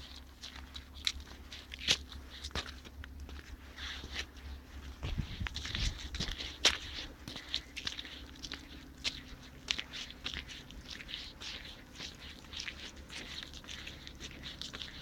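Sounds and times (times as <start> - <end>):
footsteps on forest floor: 0.0 - 15.0.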